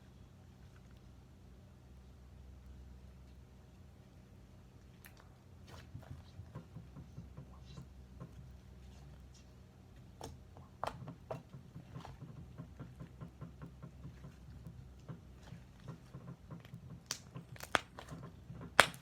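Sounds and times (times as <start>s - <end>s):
slime squishing with clicks and pops: 16.5s - 19.0s.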